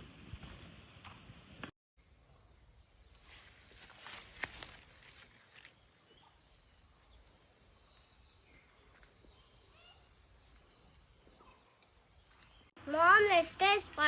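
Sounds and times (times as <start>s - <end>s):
faint bird chirps: 5.4s - 12.7s.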